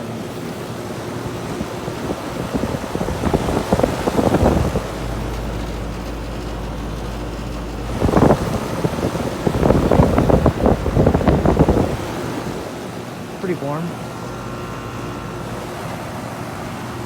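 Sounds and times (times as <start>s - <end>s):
heat pump unit running: 0.0s - 17.0s
wind rumble on microphone: 1.3s - 12.8s.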